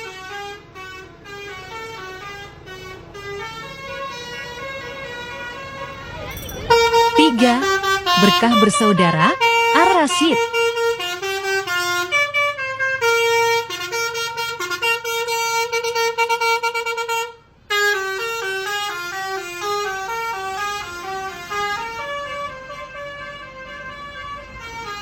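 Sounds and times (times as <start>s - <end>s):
musical bus horn tune: 0.0s - 25.0s.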